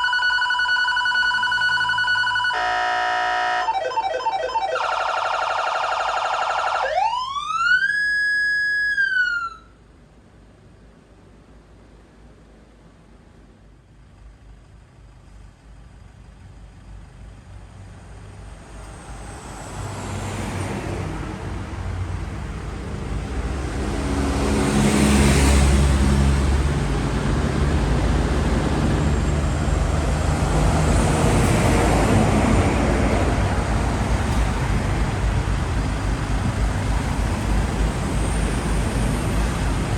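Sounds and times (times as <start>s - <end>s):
road noise: 0.0s - 39.9s
vehicle engine: 13.1s - 39.9s.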